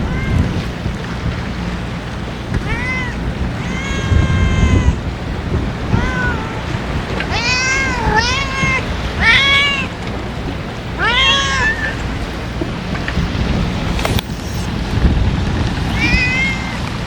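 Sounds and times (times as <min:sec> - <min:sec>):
cat meowing: 0:00.0 - 0:00.8, 0:02.6 - 0:05.1, 0:05.8 - 0:10.0, 0:11.0 - 0:12.1, 0:15.8 - 0:17.0
wind noise: 0:00.0 - 0:17.0.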